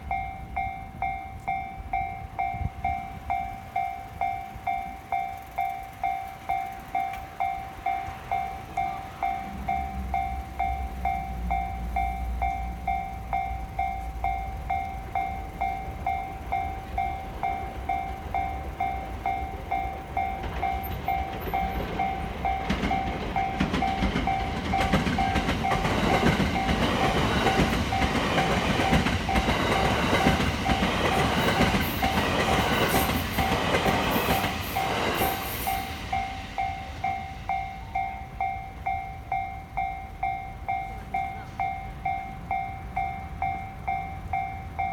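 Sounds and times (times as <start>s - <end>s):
low train rumble: 0.0s - 44.9s
level crossing bell dinging: 0.1s - 29.9s, 35.7s - 44.9s
train wheels clattering over rail joints: 17.3s - 37.2s.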